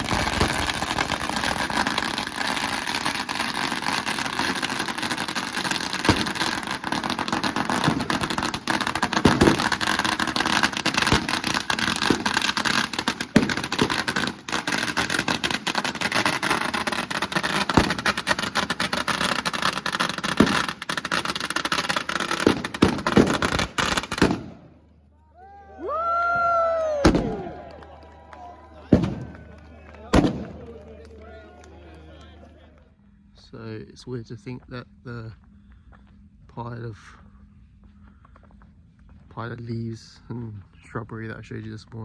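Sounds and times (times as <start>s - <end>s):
firecrackers crackling: 0.0s - 24.9s, 25.8s - 32.9s.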